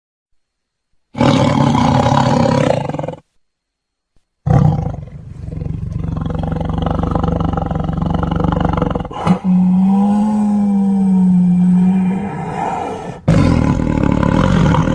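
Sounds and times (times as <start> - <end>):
big cat roaring and growling: 4.5 - 14.9.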